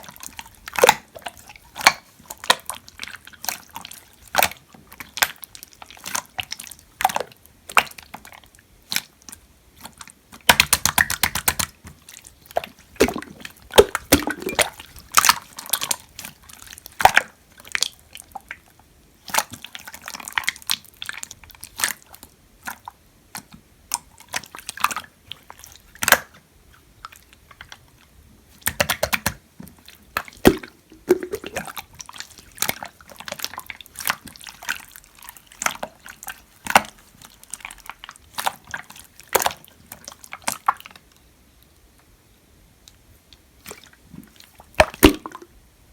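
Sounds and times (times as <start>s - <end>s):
air bubbles popping: 13.0s - 14.7s, 30.4s - 31.7s, 44.8s - 45.5s
slime squished by hand: 13.0s - 14.8s, 30.4s - 31.7s, 44.8s - 45.5s.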